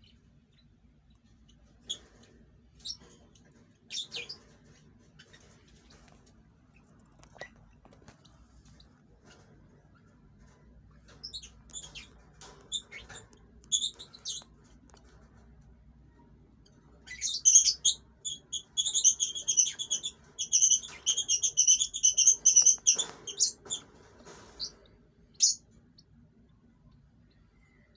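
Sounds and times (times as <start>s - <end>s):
birds chirping: 11.0s - 15.0s, 16.6s - 26.2s.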